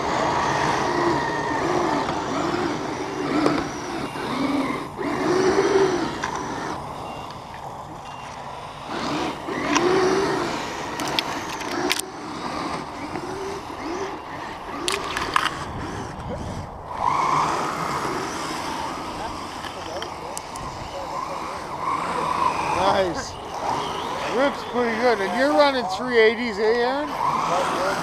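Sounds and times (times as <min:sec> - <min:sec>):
electric motors whining: 0:00.0 - 0:28.0
sharp clicks: 0:14.7 - 0:16.3.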